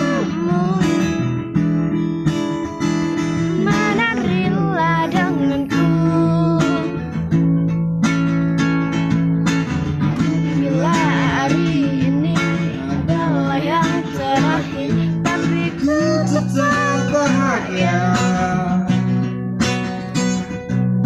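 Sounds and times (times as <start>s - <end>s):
person singing: 0.0s - 1.4s, 3.4s - 7.0s, 10.2s - 19.1s
plucked guitar music: 0.0s - 21.0s.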